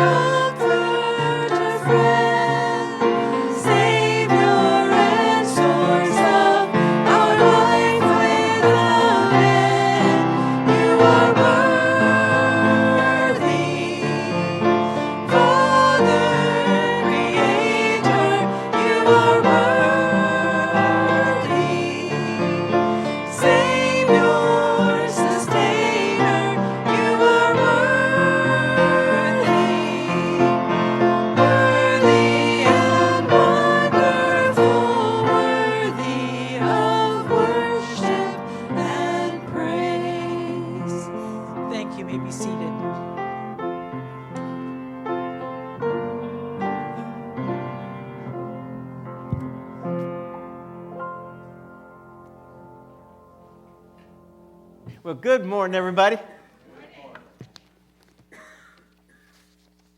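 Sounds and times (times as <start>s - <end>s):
voices singing worship song: 0.0s - 44.7s.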